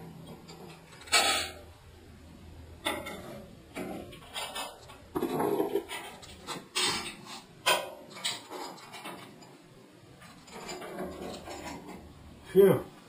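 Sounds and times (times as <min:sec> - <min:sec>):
metallic clicks and clanks of tools: 0:00.2 - 0:01.6, 0:02.8 - 0:09.6, 0:10.2 - 0:12.1.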